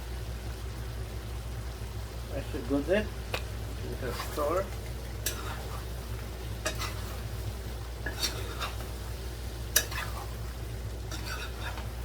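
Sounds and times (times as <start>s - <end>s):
pot sizzling: 0.0s - 12.0s
steady low hum: 0.0s - 12.0s
spoon clacking against pot: 6.6s - 7.0s, 8.0s - 8.9s, 9.7s - 10.2s.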